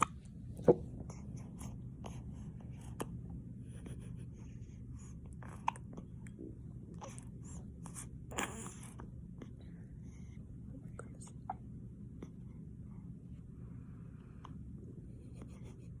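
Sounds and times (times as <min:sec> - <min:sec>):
faint steady hum: 0:00.0 - 0:16.0.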